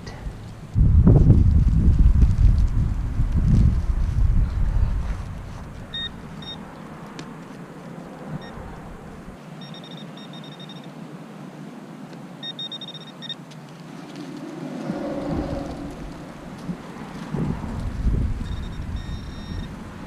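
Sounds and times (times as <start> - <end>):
high-pitched metal detector beeps: 5.9 - 6.6, 9.6 - 10.9, 12.4 - 13.4, 18.4 - 19.7.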